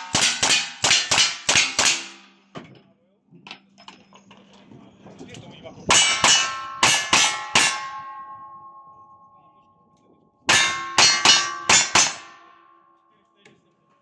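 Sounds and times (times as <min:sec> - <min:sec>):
metal clanging: 0:05.9 - 0:09.2, 0:10.5 - 0:12.7.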